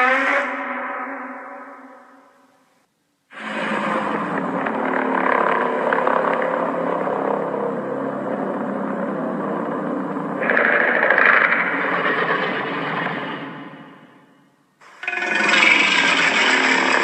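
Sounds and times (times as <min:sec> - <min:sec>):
monster roar: 0:03.3 - 0:13.8.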